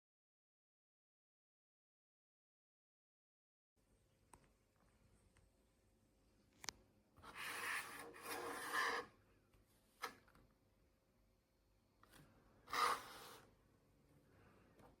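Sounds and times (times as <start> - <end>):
rubbing and scraping: 7.2 - 9.2, 12.7 - 13.5.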